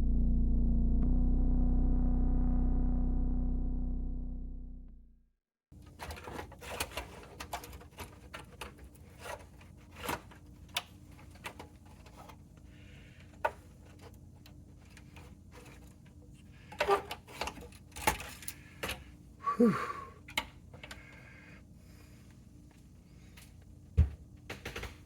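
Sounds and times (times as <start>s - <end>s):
faint steady hum: 5.8s - 24.8s.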